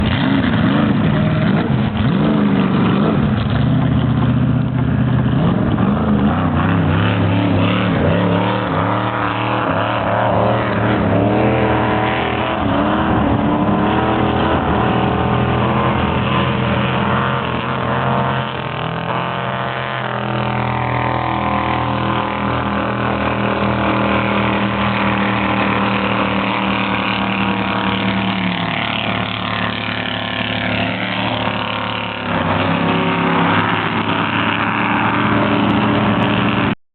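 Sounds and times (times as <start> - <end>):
jet boat engines running: 0.0 - 36.8.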